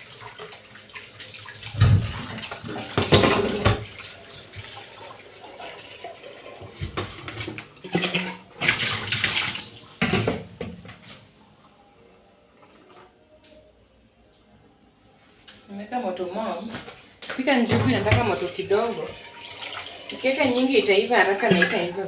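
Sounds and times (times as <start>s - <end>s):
water running and splashing: 0.0s - 10.0s, 18.1s - 22.0s.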